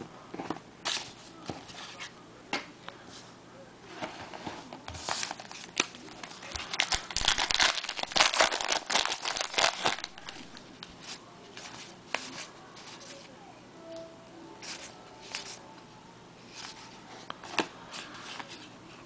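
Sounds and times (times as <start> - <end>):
plastic wrapper crinkling and tearing: 5.1 - 10.7.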